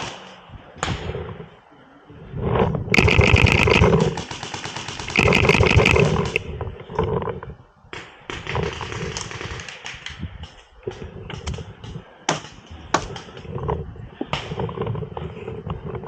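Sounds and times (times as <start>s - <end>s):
paintball marker firing bursts: 3.0s - 6.4s.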